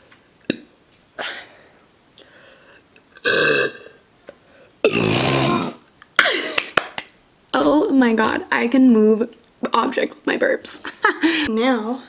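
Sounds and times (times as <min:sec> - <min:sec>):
woman burping: 0:03.2 - 0:04.0, 0:04.8 - 0:06.5.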